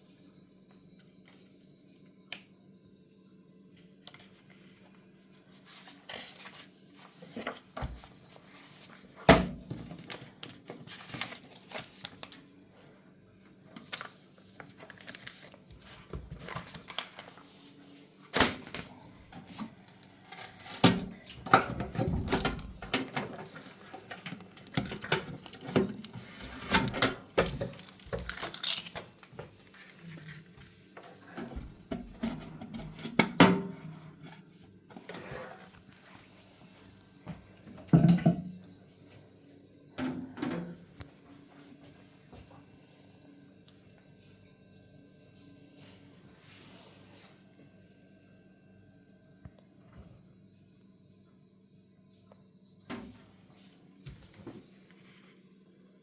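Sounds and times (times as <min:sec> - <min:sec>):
packaging rustling and crinkling: 0:09.8 - 0:12.5, 0:13.8 - 0:17.5, 0:21.8 - 0:30.6.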